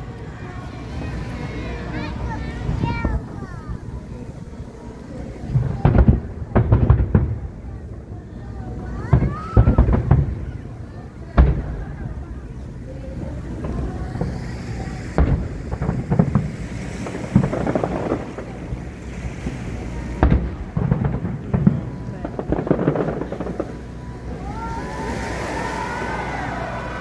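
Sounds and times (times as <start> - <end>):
crowd chatter: 0.0 - 27.0
fireworks booming: 0.0 - 27.0
firework whistles: 22.5 - 27.0.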